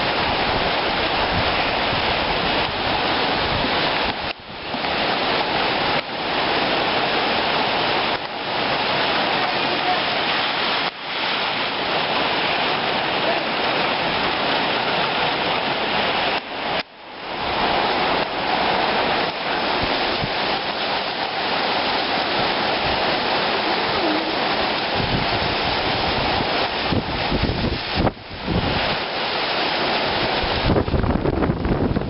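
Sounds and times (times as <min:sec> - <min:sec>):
heavy rain in strong wind: 0:00.0 - 0:32.0.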